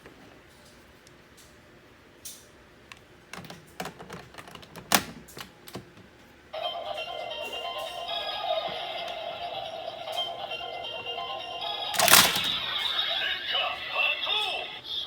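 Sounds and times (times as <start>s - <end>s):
toy electronic sound effect: 6.6s - 15.0s
hard plastic toy clicks: 11.9s - 12.7s.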